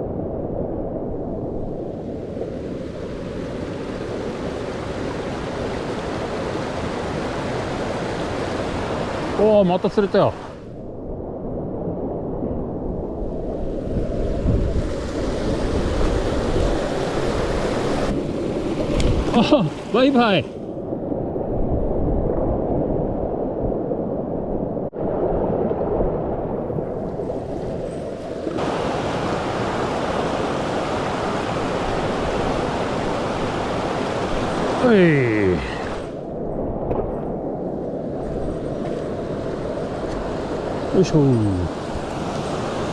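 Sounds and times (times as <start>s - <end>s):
wind rumble on microphone: 0.0s - 9.4s, 10.6s - 19.5s, 20.6s - 42.9s
stream rushing over rocks: 2.2s - 10.6s, 15.1s - 20.5s, 27.0s - 36.2s, 38.9s - 42.9s.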